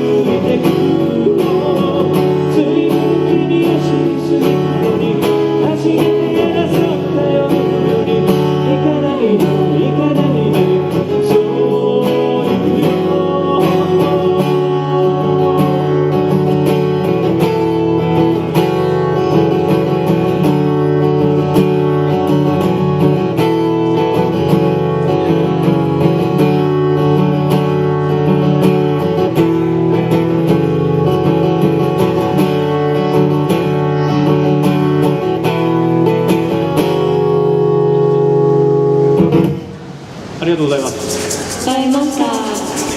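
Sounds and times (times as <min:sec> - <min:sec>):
person singing: 0:00.0 - 0:16.5
acoustic guitar strummed and picked: 0:00.0 - 0:42.9.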